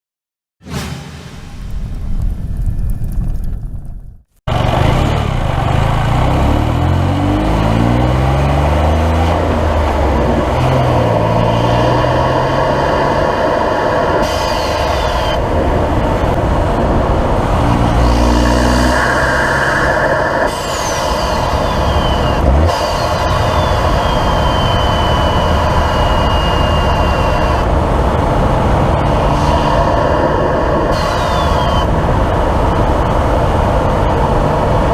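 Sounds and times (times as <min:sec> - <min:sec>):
turbo whistle falling in pitch: 0:21.1 - 0:27.7.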